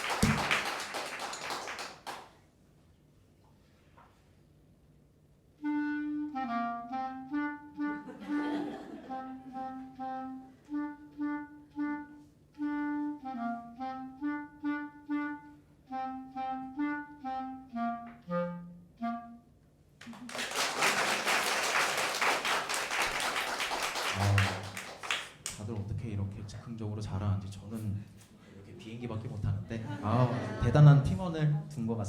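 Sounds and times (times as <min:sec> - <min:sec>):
clarinet melody: 0:05.5 - 0:20.2.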